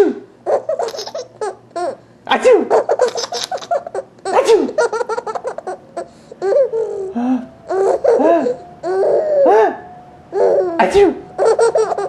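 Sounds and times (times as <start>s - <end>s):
baby laughing: 0.4s - 12.0s
person sneezing: 4.3s - 4.8s.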